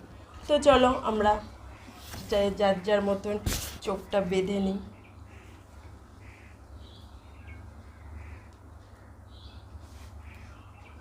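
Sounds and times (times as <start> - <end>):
low steady hum: 0.0 - 11.0
faint bird calls: 4.8 - 11.0.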